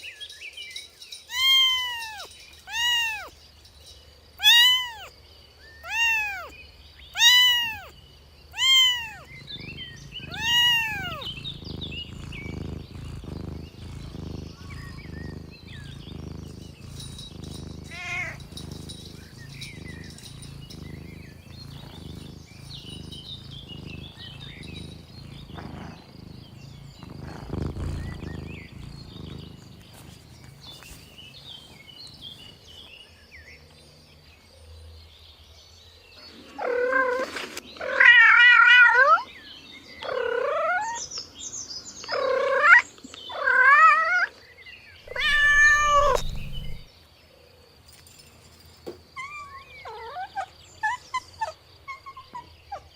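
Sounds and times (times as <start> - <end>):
soft chirps: 0.7 - 33.0, 45.1 - 46.9
cat meowing: 1.3 - 3.3, 4.4 - 5.1, 5.8 - 6.6, 7.2 - 13.2, 17.7 - 18.5, 45.1 - 46.9.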